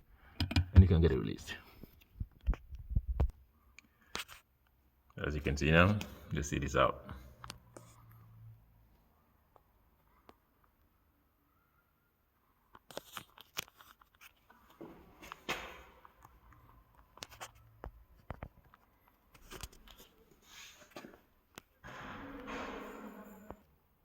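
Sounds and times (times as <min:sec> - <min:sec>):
clicks and scrapes of handling: 0:12.7 - 0:15.4.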